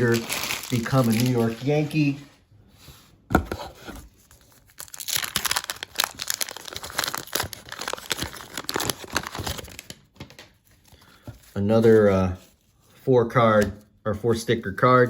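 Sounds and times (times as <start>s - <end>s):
wax paper wrapper crinkling: 0.0s - 2.4s, 4.2s - 12.9s.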